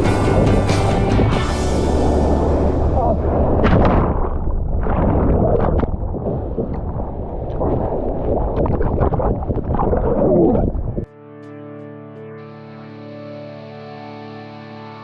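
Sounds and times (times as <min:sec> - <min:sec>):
sharp splashes: 0:00.0 - 0:10.0
sea water splashing and rushing: 0:00.0 - 0:11.1
wind buffeting microphone: 0:02.0 - 0:11.1.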